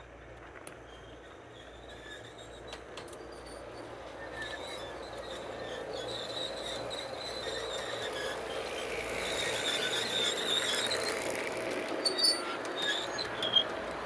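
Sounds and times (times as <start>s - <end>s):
high squeal: 4.2s - 11.2s, 12.0s - 13.7s
model train rumbling: 5.1s - 14.0s.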